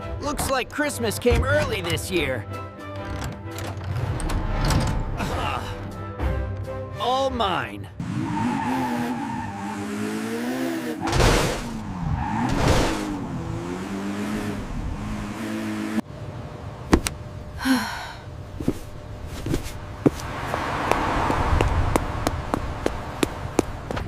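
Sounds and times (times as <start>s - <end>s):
engine revving: 8.0s - 16.0s.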